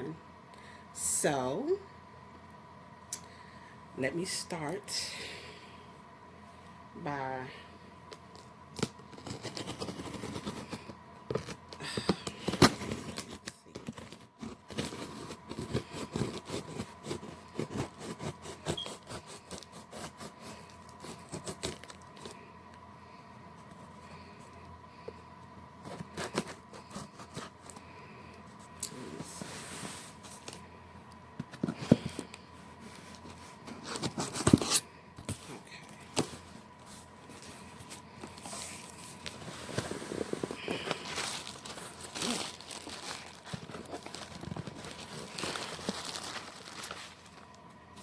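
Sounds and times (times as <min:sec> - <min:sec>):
cardboard and packing rustling: 0:08.8 - 0:22.4, 0:25.8 - 0:27.9, 0:31.4 - 0:48.0.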